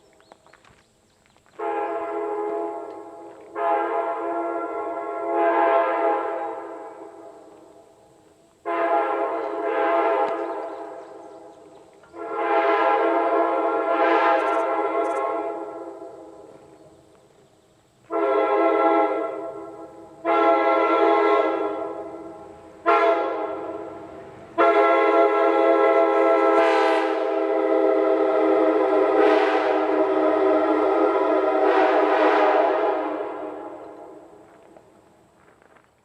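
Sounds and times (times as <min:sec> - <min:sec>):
locomotive air horn blasts: 0:01.6 - 0:07.3, 0:08.6 - 0:10.6, 0:12.1 - 0:16.5, 0:18.1 - 0:34.4.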